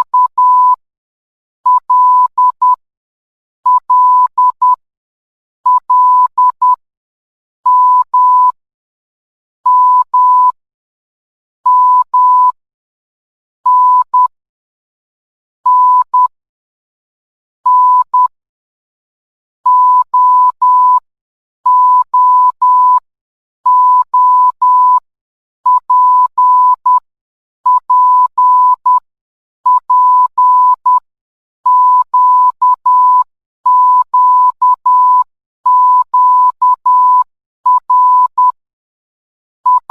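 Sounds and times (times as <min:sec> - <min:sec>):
morse code beeps: 0:00.0 - 0:00.8, 0:01.7 - 0:02.8, 0:03.7 - 0:04.8, 0:05.7 - 0:06.8, 0:25.7 - 0:27.0, 0:27.7 - 0:29.0, 0:29.7 - 0:31.0, 0:31.7 - 0:38.6, 0:39.7 - 0:39.9.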